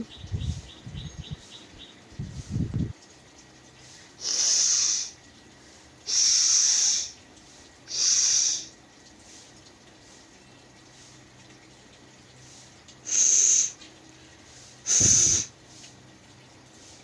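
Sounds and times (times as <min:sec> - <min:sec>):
person blowing nose: 0:04.2 - 0:05.1, 0:14.9 - 0:15.5.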